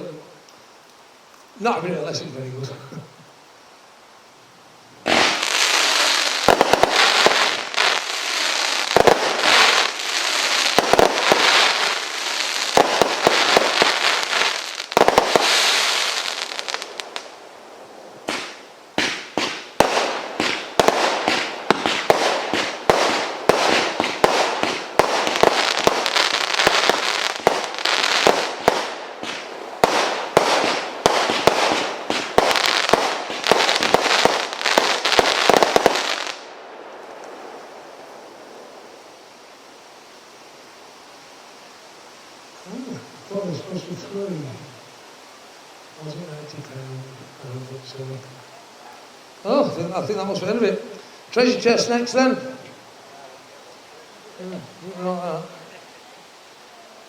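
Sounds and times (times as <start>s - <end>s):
firework barrage shots and crackle: 5.0s - 17.4s, 18.2s - 37.9s.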